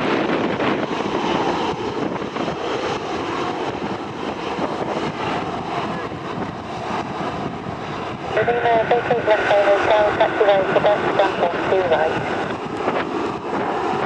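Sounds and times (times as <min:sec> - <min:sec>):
aircraft engine noise: 0:00.0 - 0:14.0
wind buffeting microphone: 0:00.0 - 0:14.0.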